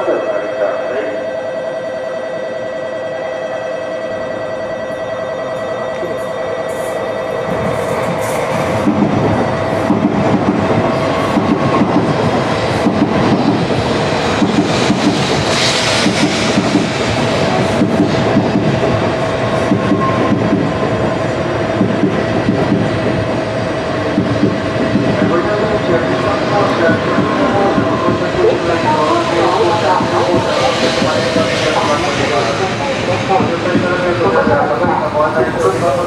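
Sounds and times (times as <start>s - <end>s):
steady tone: 0.0s - 36.0s
train wheels on rail: 5.6s - 36.0s.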